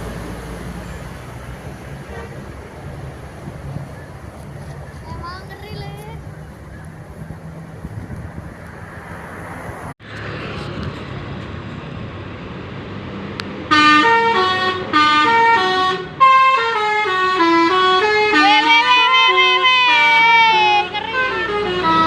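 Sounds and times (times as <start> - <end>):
road noise: 0.0 - 22.0
bus musical horn playing tune: 2.0 - 2.5, 13.7 - 22.0.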